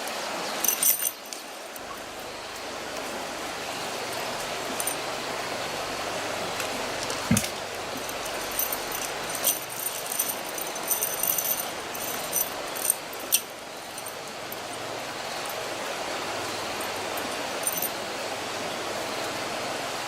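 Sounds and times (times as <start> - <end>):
metallic clinks and jingles: 0.1 - 5.7, 6.4 - 15.6, 16.7 - 18.0
dull thump: 7.2 - 7.6.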